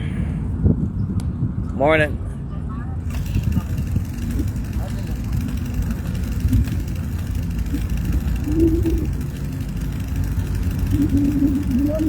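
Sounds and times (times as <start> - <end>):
wind buffeting microphone: 0.4 - 12.0
bicycle riding rumble: 2.4 - 12.0.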